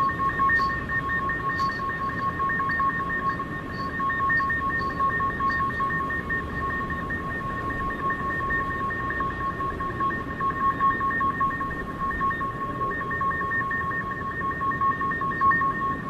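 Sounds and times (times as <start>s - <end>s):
fluttering electronic drone: 0.0s - 8.8s.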